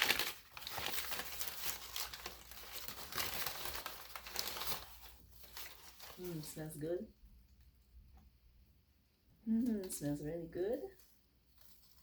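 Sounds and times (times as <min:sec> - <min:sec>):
wrapping tearing: 0:00.0 - 0:06.5
packaging crinkling and rustling: 0:00.0 - 0:06.6.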